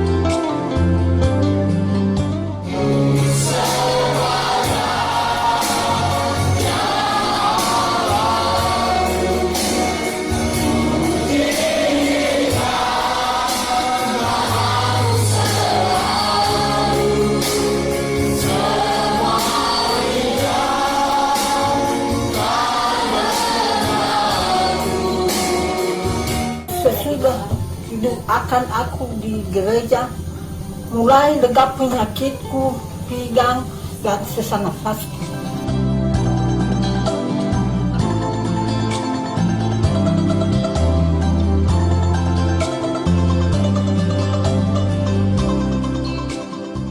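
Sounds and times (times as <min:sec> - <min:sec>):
instrumental accompaniment: 0:00.0 - 0:46.9
choir singing gospel: 0:02.7 - 0:36.4.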